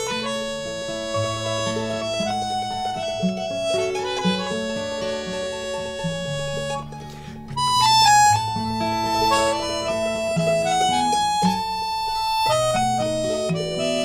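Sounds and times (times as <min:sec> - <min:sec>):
live folk band playing: 0:00.0 - 0:14.0.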